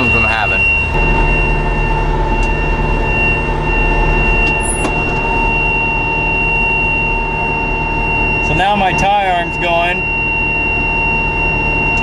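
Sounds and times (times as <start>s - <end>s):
tractor and baler running: 4.7s - 5.8s.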